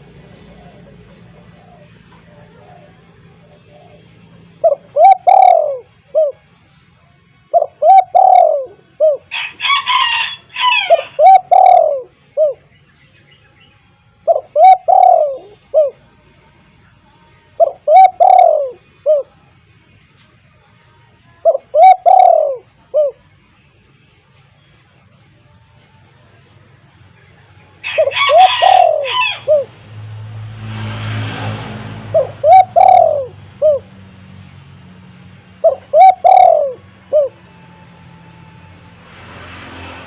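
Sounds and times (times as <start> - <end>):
dove cooing: 0.0 - 6.4, 7.5 - 12.7, 14.2 - 16.0, 17.6 - 19.3, 21.4 - 23.2, 27.8 - 29.9, 32.0 - 34.0, 35.6 - 37.4.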